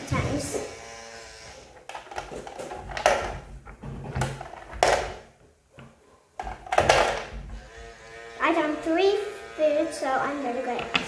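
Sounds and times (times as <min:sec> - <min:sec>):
hard plastic clicks and knocks: 0:01.9 - 0:05.3, 0:06.4 - 0:07.6.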